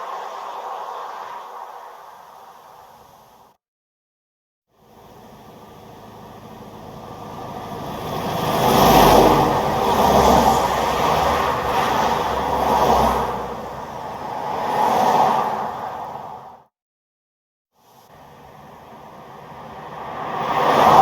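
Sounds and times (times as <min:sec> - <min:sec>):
cars passing: 0:00.0 - 0:02.9, 0:05.1 - 0:16.5, 0:19.4 - 0:21.0.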